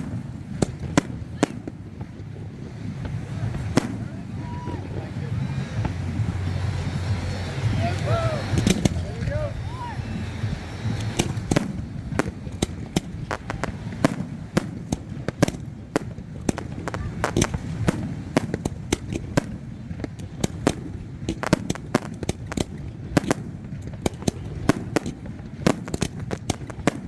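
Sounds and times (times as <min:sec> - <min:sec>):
low rumble: 0:00.0 - 0:20.2
fireworks bangs and pops: 0:00.0 - 0:27.0.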